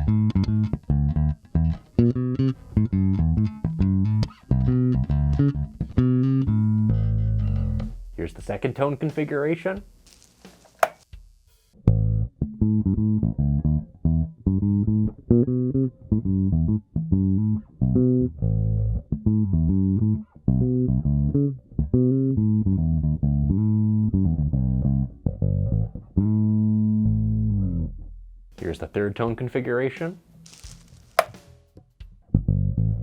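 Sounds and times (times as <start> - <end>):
electric bass riff: 0.0 - 8.2, 11.9 - 28.4, 32.3 - 33.0.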